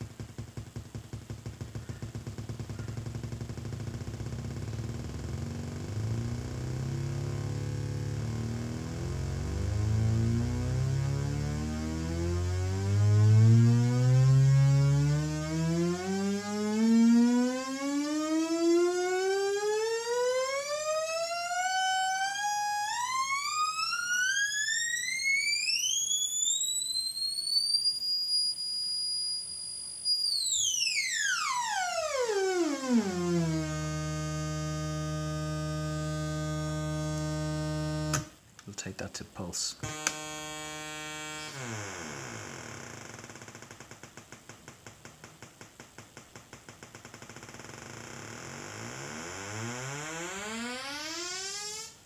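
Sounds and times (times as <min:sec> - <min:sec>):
buzzy synthesizer tone sweeping: 0:01.5 - 0:24.4, 0:31.3 - 0:39.0, 0:39.7 - 0:43.6.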